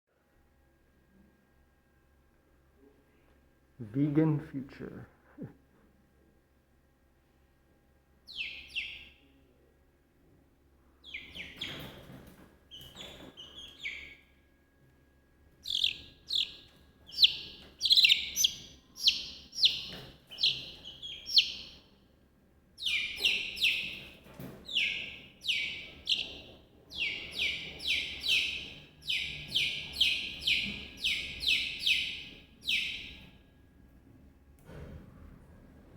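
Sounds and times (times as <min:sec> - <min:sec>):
chicks peeping: 0:08.3 - 0:09.2, 0:11.0 - 0:14.2, 0:15.5 - 0:21.9, 0:22.8 - 0:33.3.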